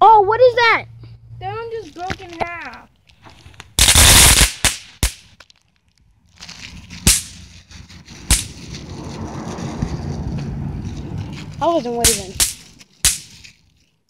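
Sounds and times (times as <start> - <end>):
firework pops: 3.6 - 5.5, 8.3 - 8.6
firework burst: 3.8 - 4.8.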